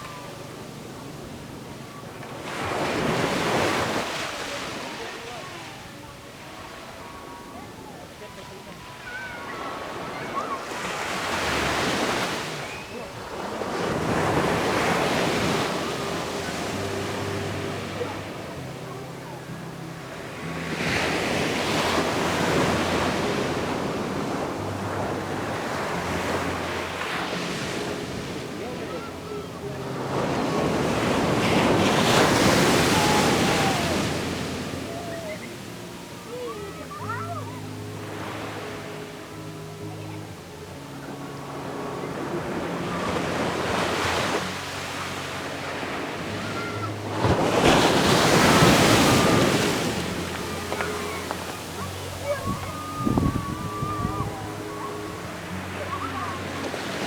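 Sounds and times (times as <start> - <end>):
ocean waves breaking on beach: 0.0 - 57.0
wind noise on microphone: 52.2 - 54.8.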